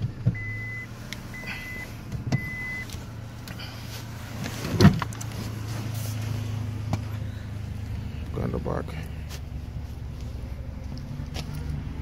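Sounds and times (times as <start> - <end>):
car engine idling: 0.0 - 12.0
car warning chime beeps: 0.3 - 3.0.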